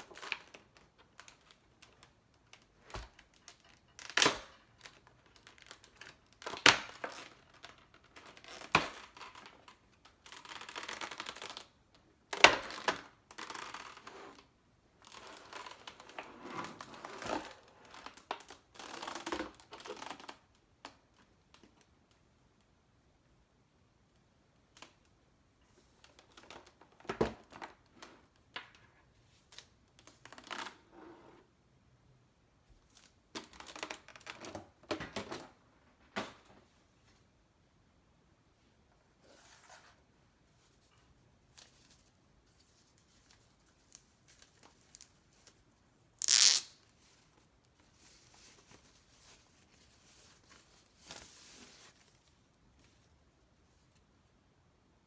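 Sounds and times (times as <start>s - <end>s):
packaging tearing: 46.2s - 46.9s.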